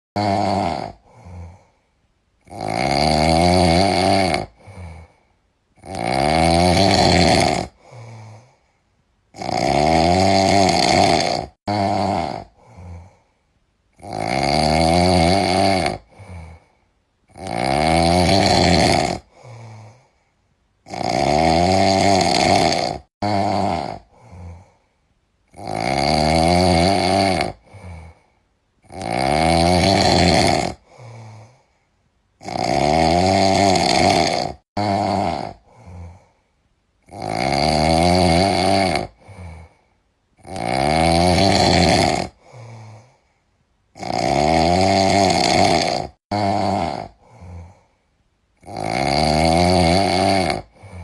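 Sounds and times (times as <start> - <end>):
heavy snoring: 0.2 - 24.9, 25.5 - 31.8, 32.4 - 48.0, 48.6 - 51.0
soft out-breath: 1.0 - 2.0, 7.8 - 8.9, 12.6 - 13.5, 19.3 - 20.4, 24.1 - 25.0, 30.8 - 32.0, 42.4 - 43.6, 47.2 - 48.1.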